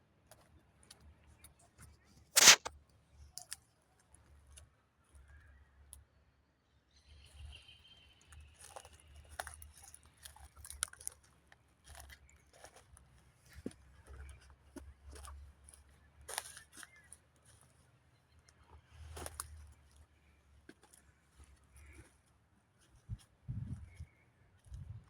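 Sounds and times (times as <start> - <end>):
sharp rustling knock: 2.4 - 2.7.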